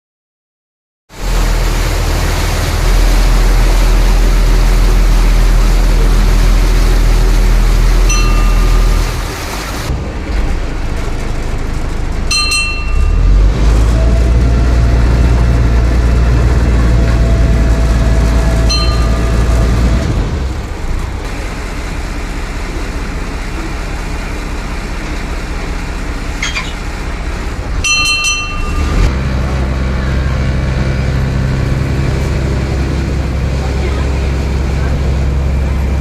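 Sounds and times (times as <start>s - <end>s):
vehicle engine running: 1.1s - 36.0s.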